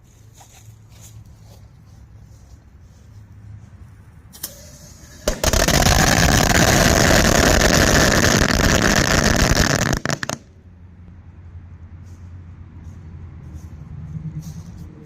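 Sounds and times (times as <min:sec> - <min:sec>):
firecrackers crackling bangs: 0:05.2 - 0:10.5.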